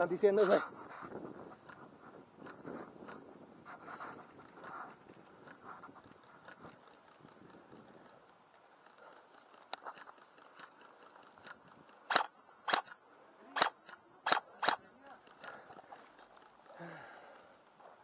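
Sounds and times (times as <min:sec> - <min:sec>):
small clicks: 0:06.2 - 0:13.0, 0:13.6 - 0:16.6
airsoft gun shots: 0:12.1 - 0:12.9, 0:13.6 - 0:14.8.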